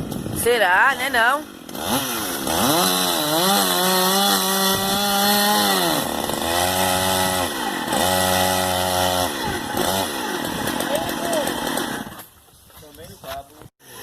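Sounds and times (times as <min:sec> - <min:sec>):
chainsaw revving while cutting: 0:00.8 - 0:12.2, 0:13.8 - 0:14.0.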